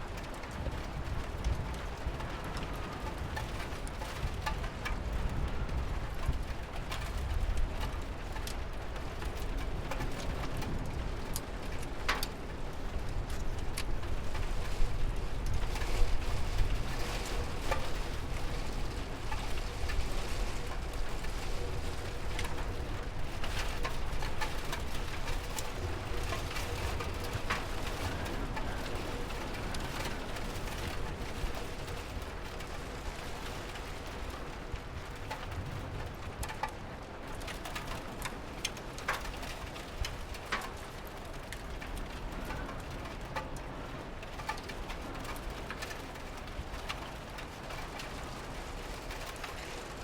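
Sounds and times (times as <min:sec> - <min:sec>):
steady rain: 0:00.0 - 0:50.0.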